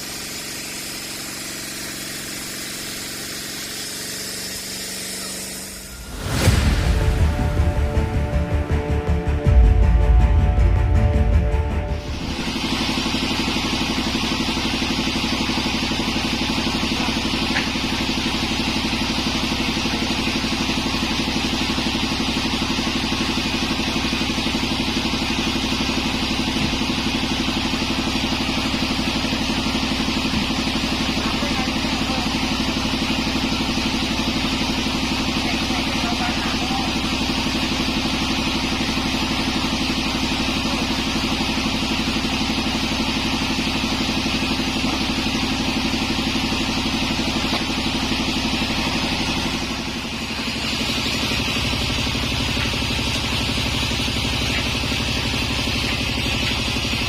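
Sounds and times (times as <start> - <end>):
sawmill engine hum: 0.0 - 57.0
sawmill hiss: 12.0 - 57.0.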